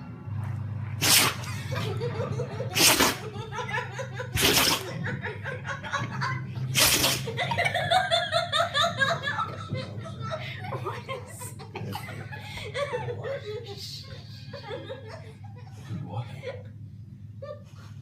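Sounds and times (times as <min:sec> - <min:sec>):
dog sneezing: 0:01.0 - 0:01.6, 0:02.7 - 0:03.3, 0:04.3 - 0:05.0, 0:06.7 - 0:07.4
people laughing: 0:01.4 - 0:16.8.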